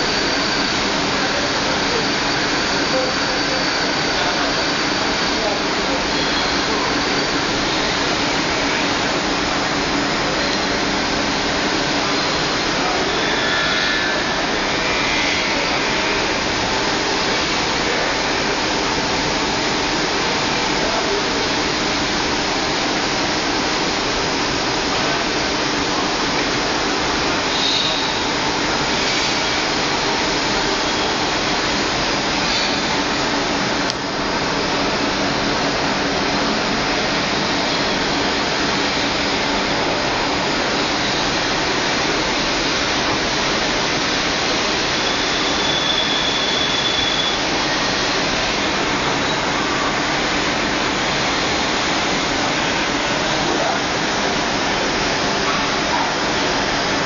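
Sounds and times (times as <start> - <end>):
short high-pitched whine: 0.0 - 20.1, 27.3 - 41.4, 44.8 - 53.6
metal lathe running: 0.0 - 57.0.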